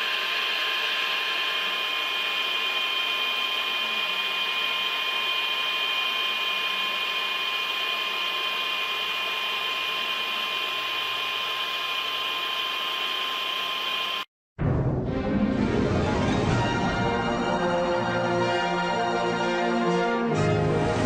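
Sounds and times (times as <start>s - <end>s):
high machine whine: 0.0s - 14.3s.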